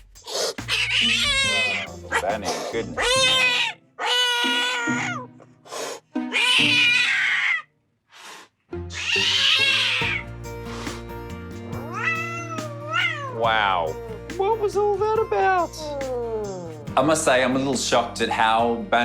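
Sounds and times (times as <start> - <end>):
music: 0.0 - 7.1, 8.7 - 19.0
cat hissing: 0.2 - 11.0, 11.9 - 13.4
cat yowling: 0.7 - 2.4, 3.0 - 5.3, 6.3 - 7.7, 8.9 - 10.3, 11.8 - 13.9.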